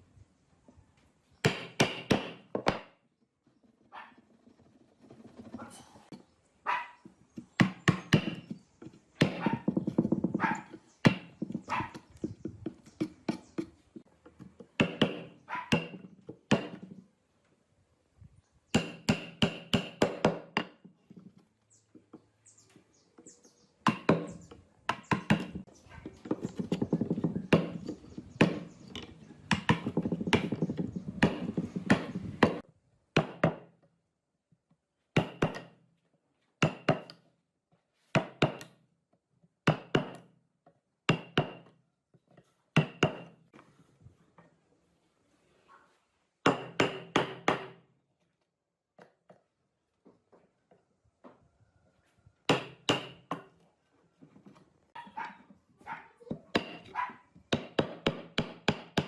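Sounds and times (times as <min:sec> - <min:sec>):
sharp knocks and thuds: 0:07.4 - 0:16.9, 0:23.8 - 0:32.6.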